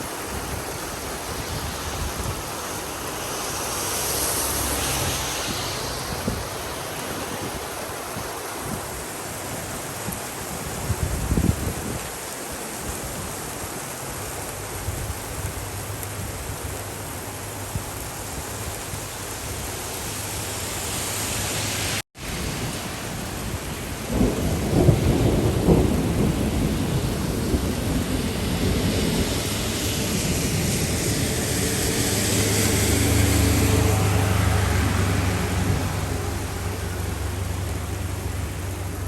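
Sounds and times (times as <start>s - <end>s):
rain hiss: 0.0s - 39.0s
rolling thunder: 23.2s - 39.0s.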